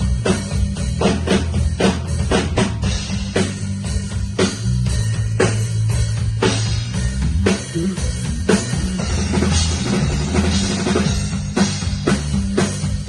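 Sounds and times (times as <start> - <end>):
music with bass line: 0.0 - 13.0.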